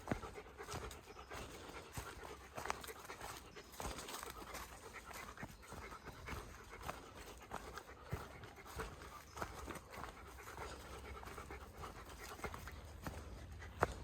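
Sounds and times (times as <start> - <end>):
footsteps on trail: 0.0 - 14.0
person panting: 0.0 - 14.0.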